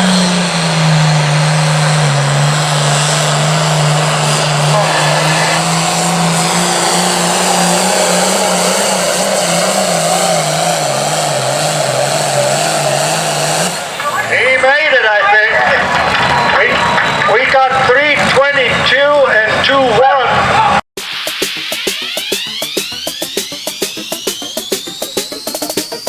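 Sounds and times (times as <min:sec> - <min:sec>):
tractor diesel engine at full throttle: 0:00.0 - 0:14.2.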